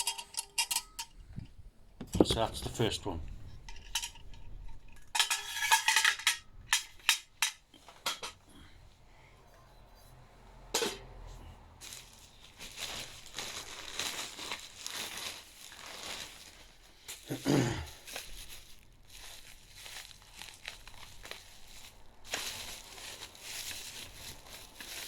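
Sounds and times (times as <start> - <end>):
metal parts clinking: 0.0 - 1.4, 3.6 - 8.4
soft rustling: 11.2 - 25.0.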